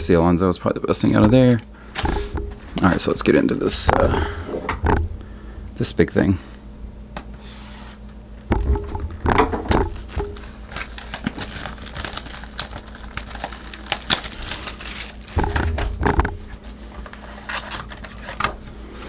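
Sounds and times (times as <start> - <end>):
cardboard box bumping: 1.2 - 5.2, 14.1 - 16.6
plastic wrap crinkling and tearing: 9.7 - 18.6.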